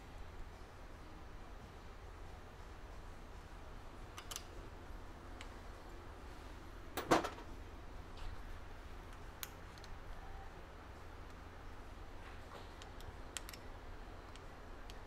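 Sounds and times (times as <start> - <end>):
hand tools clicking on metal: 12.8 - 13.7.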